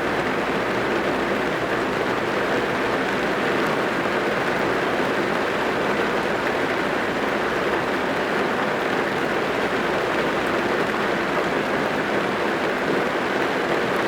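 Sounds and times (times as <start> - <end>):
heavy rain on car roof: 0.0 - 14.0.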